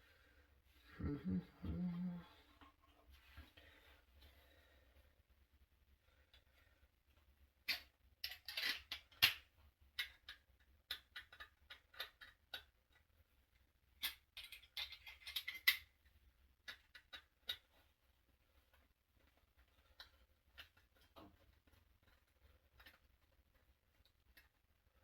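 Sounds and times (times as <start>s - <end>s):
small parts clicking and scraping: 7.6s - 13.2s, 13.9s - 18.0s, 18.6s - 25.0s.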